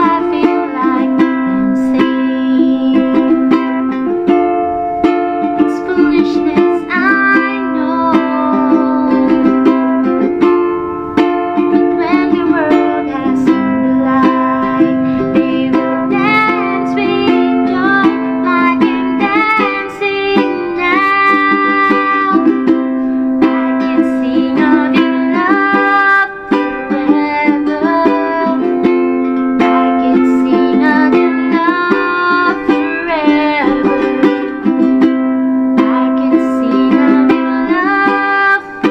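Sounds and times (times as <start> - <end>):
ukulele playing chords and melody: 0.0 - 38.9.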